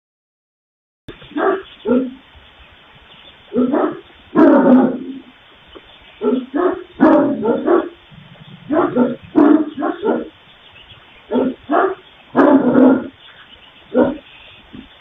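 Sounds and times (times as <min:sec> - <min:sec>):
dog barking: 0:01.3 - 0:02.2, 0:03.5 - 0:05.3, 0:06.2 - 0:08.0, 0:08.7 - 0:10.4, 0:11.3 - 0:13.2, 0:13.9 - 0:14.2.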